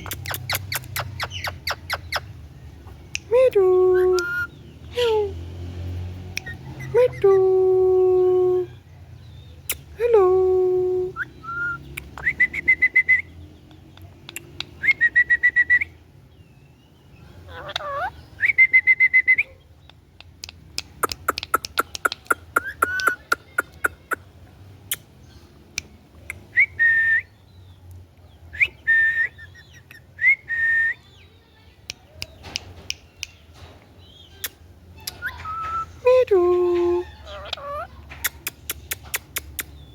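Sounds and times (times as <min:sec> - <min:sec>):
rapid bird clicks: 0:19.9 - 0:23.2.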